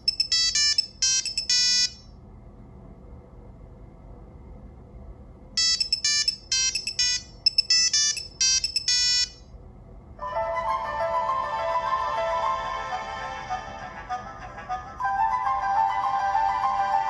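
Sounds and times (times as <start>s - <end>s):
low fuller ringtone melody: 0.0s - 2.0s, 5.6s - 9.4s, 10.2s - 17.0s.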